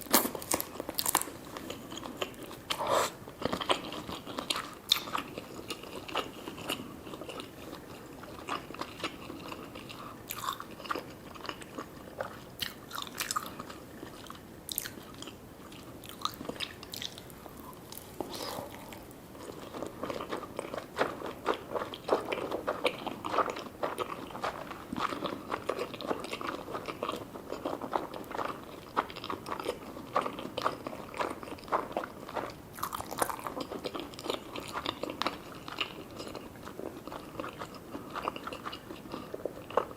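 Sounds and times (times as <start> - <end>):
person biting and chewing: 29.2 - 35.1.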